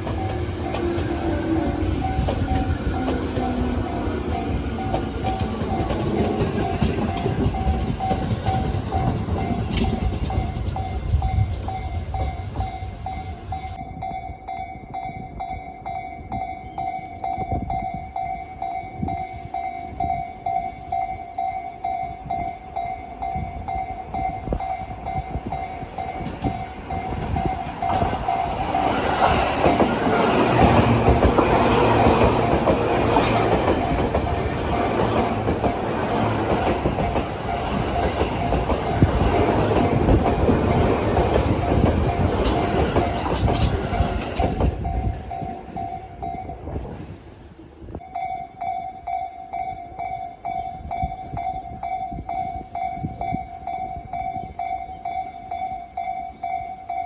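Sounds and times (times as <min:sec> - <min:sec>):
train wheels clacking over rail joints: 0:00.0 - 0:13.8, 0:25.6 - 0:46.8
level-crossing bell clanging: 0:00.0 - 0:46.7.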